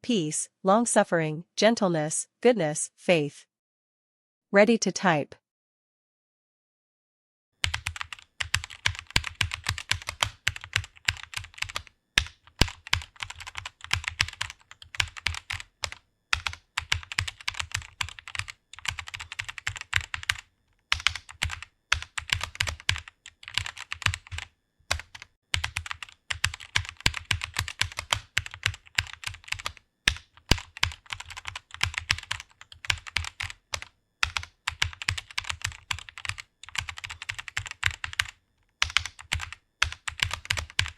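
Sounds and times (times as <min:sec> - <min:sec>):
computer keyboard typing: 0:07.6 - 0:40.9.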